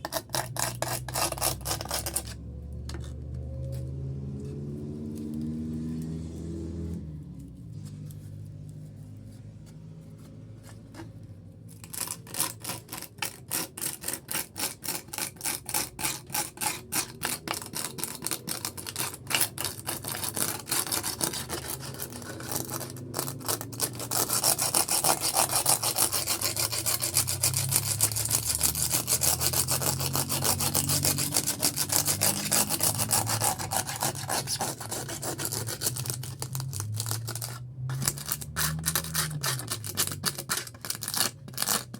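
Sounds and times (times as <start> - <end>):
hand sanding fiberglass: 11.9 - 41.9.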